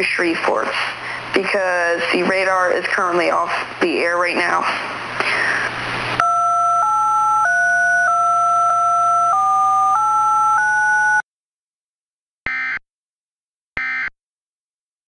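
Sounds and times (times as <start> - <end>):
telephone dual tones: 6.2 - 11.2.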